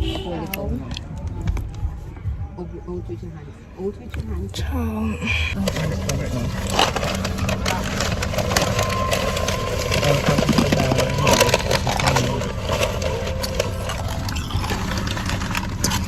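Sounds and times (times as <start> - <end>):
vehicle engine idling: 4.6 - 16.0.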